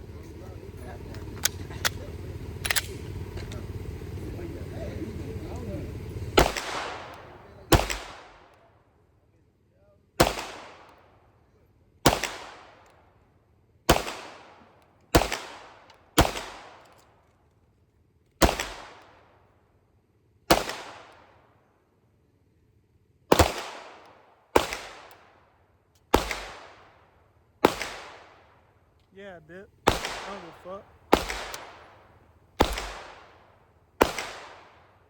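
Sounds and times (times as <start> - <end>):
pistol shots echoing: 6.4 - 8.6, 10.2 - 11.1, 12.0 - 12.9, 13.9 - 16.9, 18.4 - 19.3, 20.5 - 21.4, 23.3 - 25.5, 26.1 - 35.0.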